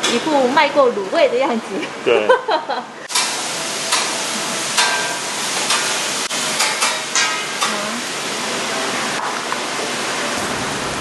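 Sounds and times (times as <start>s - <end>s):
food sizzling on griddle: 3.1s - 11.0s.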